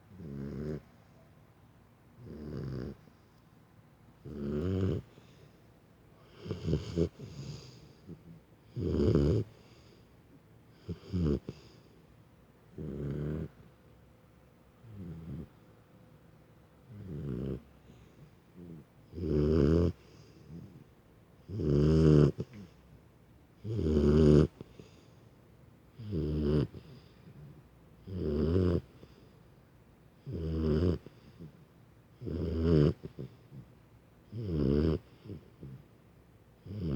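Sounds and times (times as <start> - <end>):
puppy snoring: 0.0 - 1.2, 2.2 - 3.4, 4.2 - 5.6, 6.2 - 10.1, 10.7 - 12.0, 12.7 - 13.8, 14.8 - 15.6, 16.8 - 23.0, 23.6 - 25.2, 25.9 - 29.4, 30.2 - 36.0, 36.6 - 36.9.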